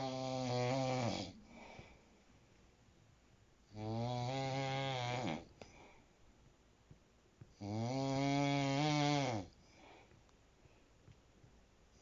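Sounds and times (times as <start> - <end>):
person snoring: 0.0 - 1.6, 3.7 - 5.5, 7.6 - 9.6
faint breathing: 1.3 - 2.7, 5.5 - 6.3, 9.6 - 11.1.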